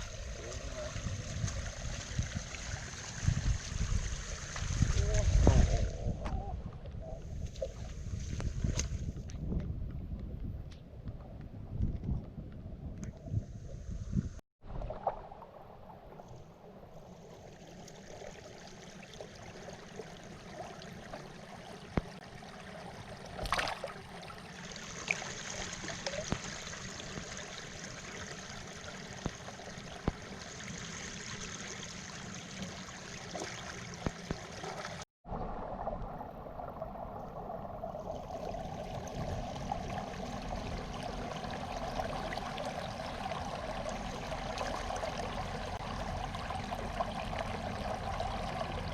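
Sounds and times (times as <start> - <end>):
floodwater running: 0.0 - 6.1, 14.7 - 48.9
small knocks and splashes: 23.4 - 24.0.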